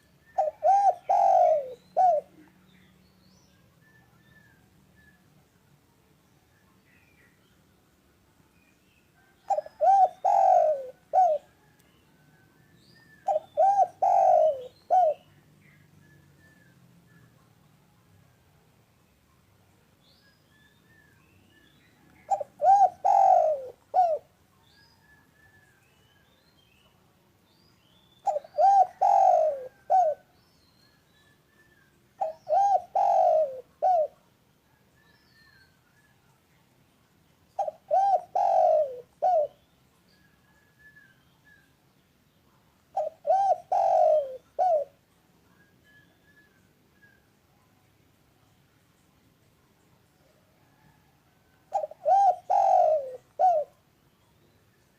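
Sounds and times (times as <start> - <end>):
dove cooing: 0.0 - 2.5, 9.2 - 11.8, 13.2 - 15.3, 22.2 - 24.3, 28.2 - 30.3, 32.2 - 34.3, 37.6 - 39.6, 42.9 - 45.0, 50.6 - 53.8
small birds chirping: 0.0 - 51.0, 51.7 - 54.9.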